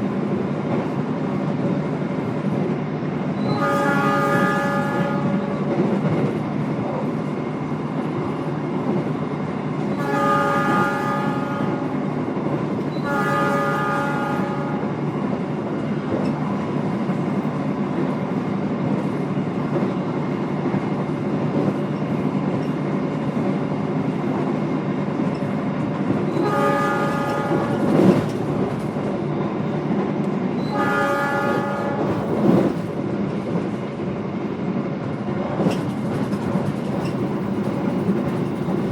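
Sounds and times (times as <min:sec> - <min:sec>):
train wheels rumbling on rails: 0:00.0 - 0:38.9
train horn blasts: 0:03.4 - 0:05.7, 0:10.0 - 0:12.0, 0:12.9 - 0:15.0, 0:26.3 - 0:28.2, 0:30.6 - 0:32.3.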